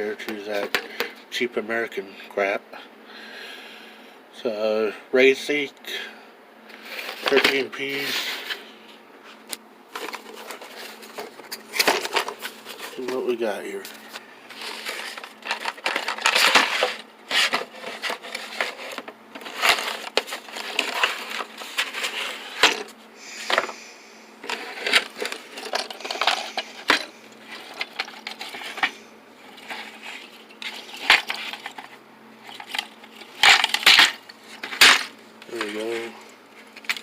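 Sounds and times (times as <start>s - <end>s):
packaging rustling: 9.9s - 23.0s, 24.4s - 37.0s
small hard parts clattering: 9.9s - 23.8s, 24.4s - 37.0s.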